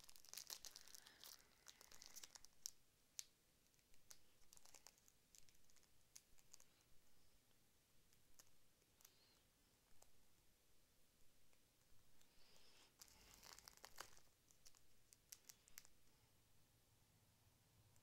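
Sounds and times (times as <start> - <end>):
foil pack crinkling and tearing: 0.0 - 2.7, 4.1 - 6.6, 13.0 - 15.9
faint clicks of cards: 11.5 - 16.1.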